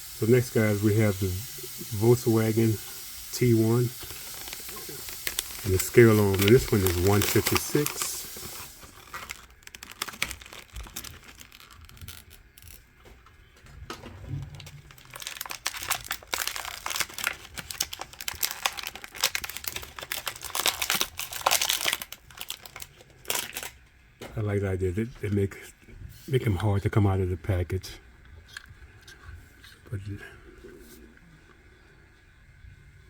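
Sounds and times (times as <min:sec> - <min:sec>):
plastic packaging crinkling: 0:00.2 - 0:23.8.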